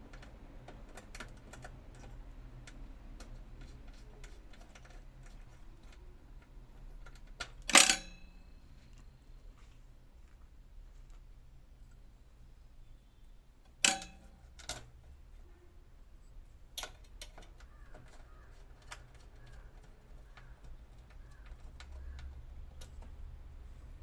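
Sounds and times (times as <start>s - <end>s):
faint irregular ticks: 16.8s - 23.4s.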